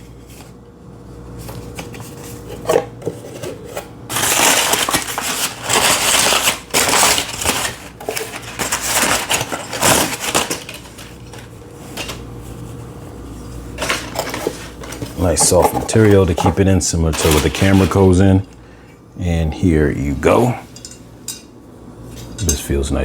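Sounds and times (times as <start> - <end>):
packaging crinkling: 4.1 - 12.6, 13.6 - 18.5.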